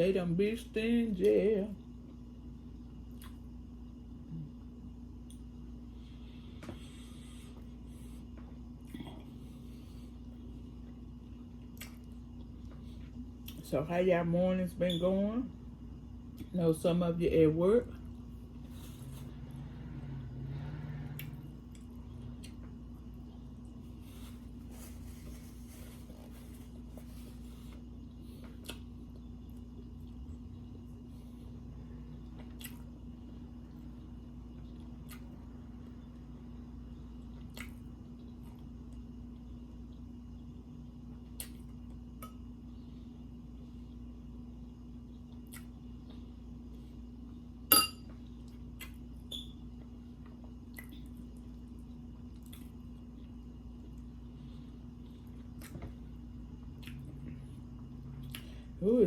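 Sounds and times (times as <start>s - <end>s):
steady electrical hum: 0.0s - 59.0s
quiet eating sounds: 1.1s - 14.0s, 15.6s - 19.8s, 21.0s - 59.0s
person chewing food: 21.2s - 30.2s, 32.1s - 35.4s, 37.2s - 40.1s, 45.1s - 46.4s, 49.8s - 54.2s, 54.8s - 56.1s, 56.7s - 58.6s.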